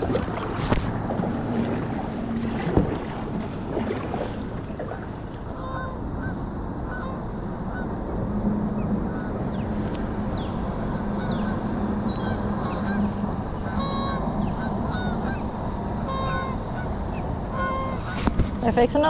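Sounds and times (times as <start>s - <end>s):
constant rushing noise: 0.0s - 19.0s
low hum: 0.0s - 19.0s
geese honking: 5.5s - 8.0s, 8.7s - 18.3s.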